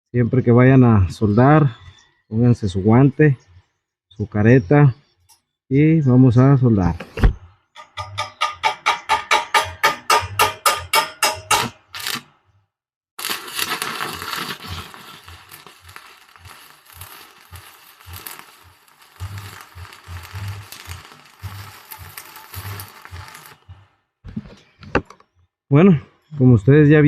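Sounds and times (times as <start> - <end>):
welding arc crackling: 11.6 - 12.3, 13.2 - 23.9.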